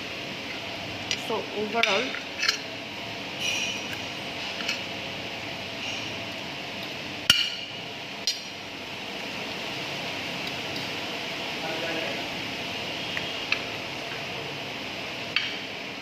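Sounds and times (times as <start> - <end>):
cutlery clinking against plates: 1.8 - 2.7.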